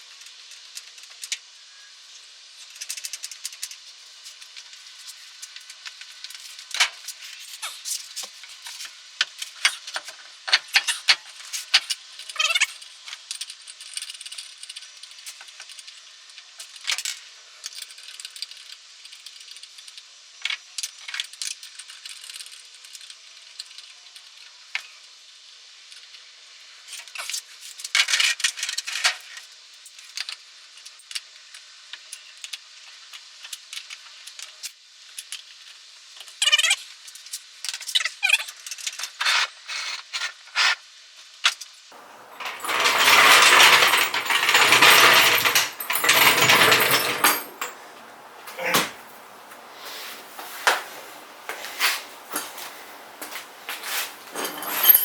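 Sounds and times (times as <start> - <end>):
metal tools clinking and rattling: 42.0 - 55.0.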